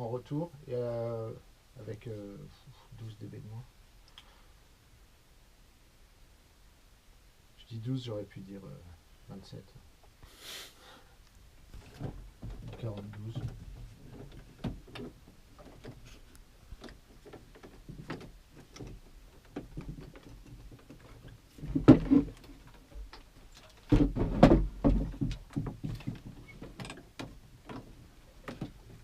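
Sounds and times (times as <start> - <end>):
small knocks and clicks: 11.3 - 29.0.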